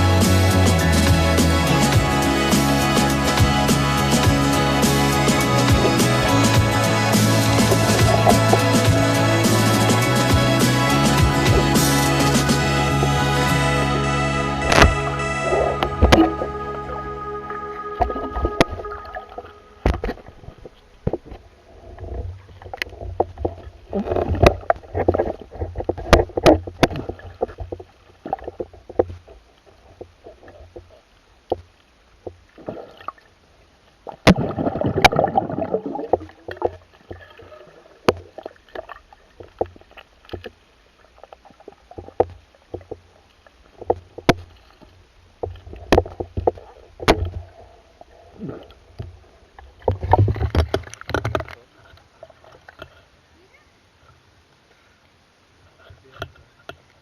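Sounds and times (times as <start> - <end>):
water sloshing and splashing: 0.0 - 53.2.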